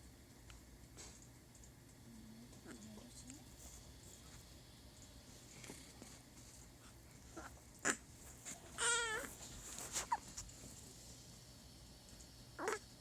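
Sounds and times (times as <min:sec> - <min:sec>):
baby whimpering: 0:08.8 - 0:09.3
newborn baby squeaking: 0:08.8 - 0:09.3.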